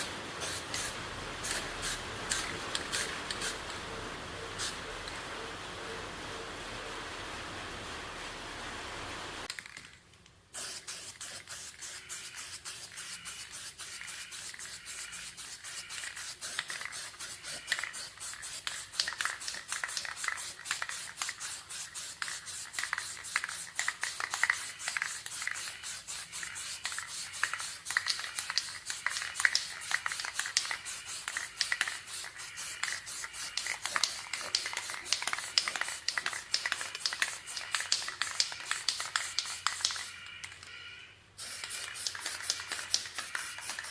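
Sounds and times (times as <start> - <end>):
sandpaper rubbing on plastic: 11.0 - 38.0, 41.5 - 43.9.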